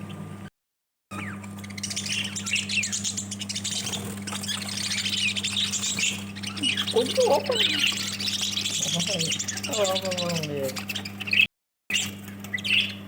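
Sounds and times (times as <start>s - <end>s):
lovebirds chirping and squawking: 1.1s - 13.0s
steady low hum: 1.2s - 11.5s.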